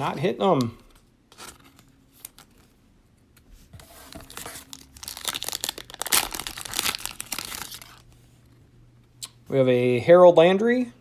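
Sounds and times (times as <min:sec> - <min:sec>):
plastic wrapper crinkling and tearing: 0:04.2 - 0:08.2.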